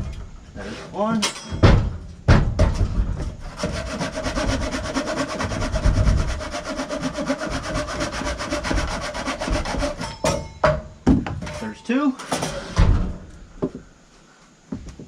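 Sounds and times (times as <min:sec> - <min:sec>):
hand saw cutting wood: 0:03.4 - 0:10.3.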